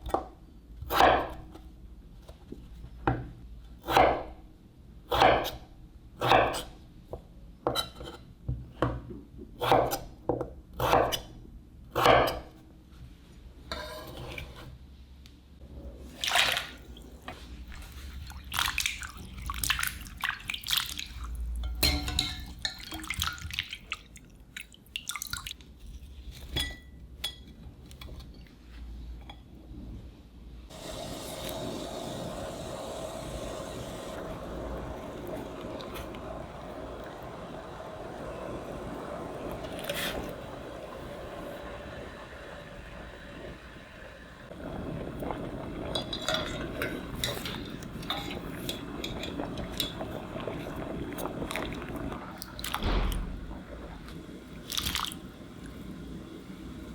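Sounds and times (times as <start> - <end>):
water splashing and dripping: 16.0 - 26.1, 44.5 - 55.9.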